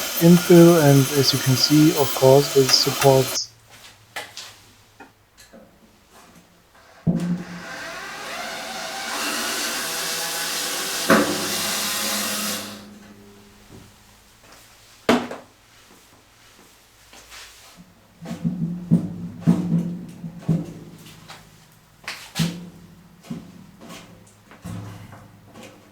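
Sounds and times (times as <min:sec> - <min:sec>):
power tool motor whining: 0:00.0 - 0:03.4, 0:07.6 - 0:12.8.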